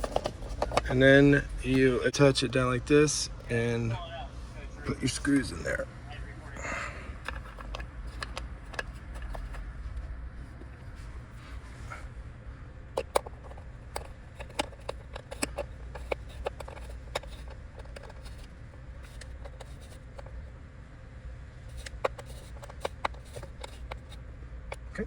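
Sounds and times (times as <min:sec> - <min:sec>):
low hum: 0:00.0 - 0:25.0
screwdriver clicking on screws: 0:13.0 - 0:20.2, 0:21.7 - 0:24.2.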